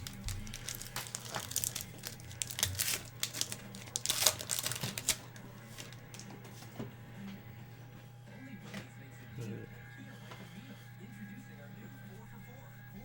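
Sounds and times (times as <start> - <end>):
trading cards flipping: 0.0 - 6.6.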